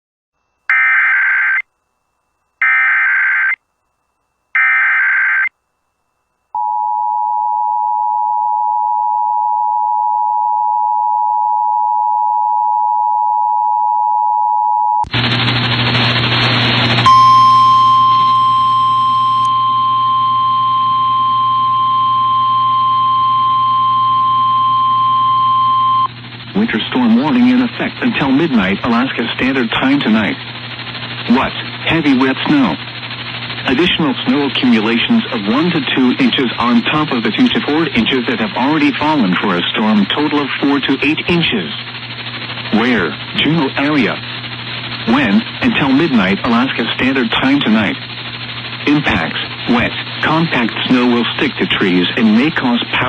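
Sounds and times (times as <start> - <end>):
steady warning alarm tone: 0.7 - 1.6, 2.6 - 3.6, 4.5 - 5.5, 16.9 - 53.0
radio hiss and hum: 15.1 - 53.0
buzzy digital data tones: 15.2 - 53.0
two-tone attention signal: 17.0 - 26.1.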